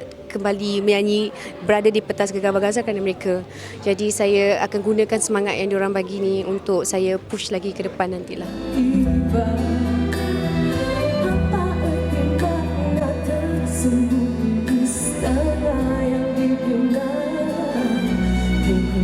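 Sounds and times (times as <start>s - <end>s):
woman singing: 7.6s - 19.0s
sustained bass notes: 8.4s - 19.0s.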